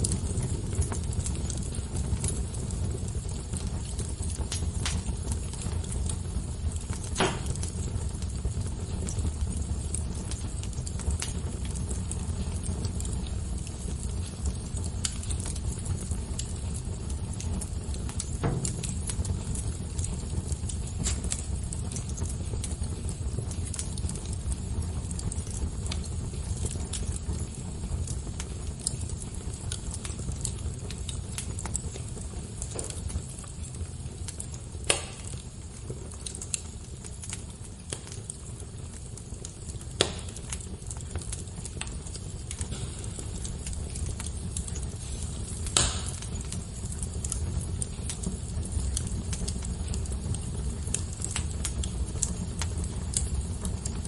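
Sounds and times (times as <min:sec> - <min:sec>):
low steady rumble: 0:00.0 - 0:27.6
wood fire crackling: 0:00.0 - 0:54.0.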